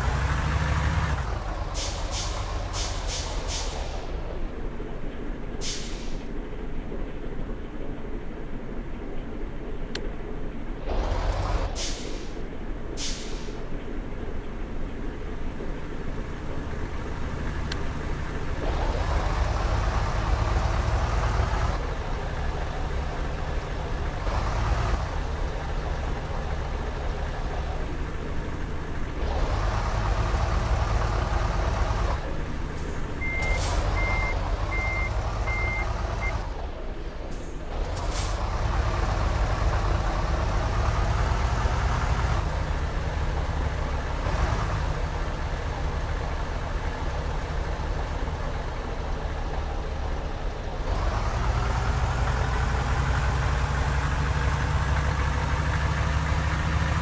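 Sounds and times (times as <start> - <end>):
bus engines revving: 0.0 - 57.0
air brake hisses: 1.7 - 4.1, 5.6 - 6.3, 11.8 - 12.4, 13.0 - 13.7, 32.7 - 34.3
reversing beeper: 33.2 - 36.5.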